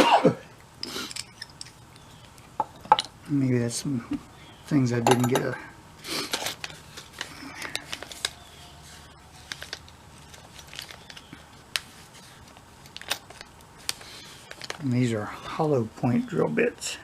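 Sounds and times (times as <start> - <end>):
metal bits clinking: 1.0 - 2.1, 5.0 - 5.6.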